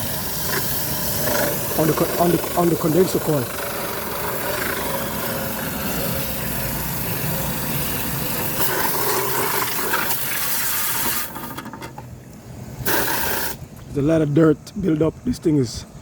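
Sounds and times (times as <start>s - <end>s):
hose spraying water: 0.0s - 11.7s, 12.8s - 13.6s.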